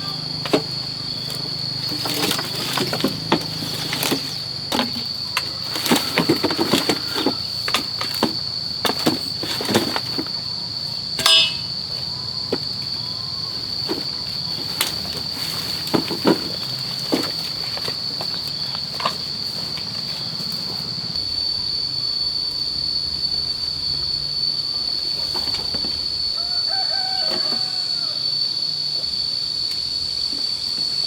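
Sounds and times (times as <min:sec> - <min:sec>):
high-pitched insect drone: 0:00.0 - 0:31.0
knocks and clatter from handwork: 0:00.4 - 0:10.3, 0:11.2 - 0:11.8, 0:13.8 - 0:19.9
sharp ringing knock: 0:11.2 - 0:11.8.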